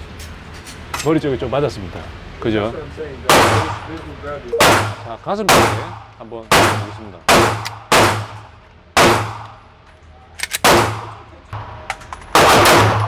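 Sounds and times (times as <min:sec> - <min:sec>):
pistol shots ringing off walls: 0:03.3 - 0:09.7, 0:10.3 - 0:13.0.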